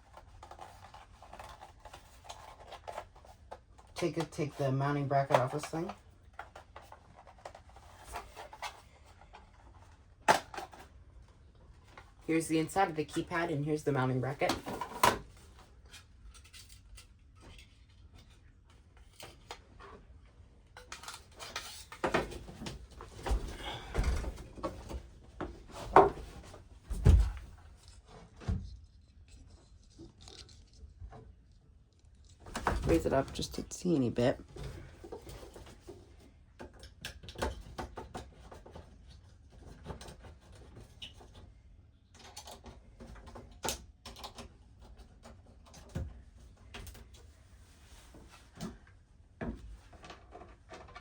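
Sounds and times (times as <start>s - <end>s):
handling knocks and thumps: 22.0s - 27.8s
plastic clicks and scrapes: 28.7s - 32.4s.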